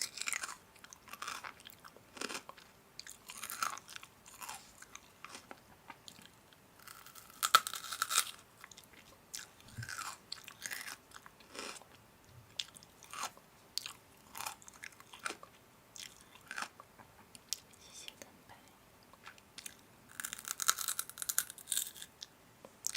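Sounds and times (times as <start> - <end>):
crunchy food chewing: 0.0 - 16.8, 19.1 - 22.9.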